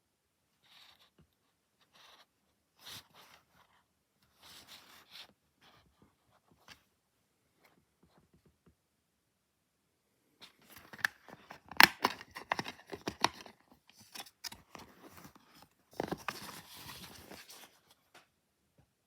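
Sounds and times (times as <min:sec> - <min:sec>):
packaging crinkling: 0:10.7 - 0:15.3.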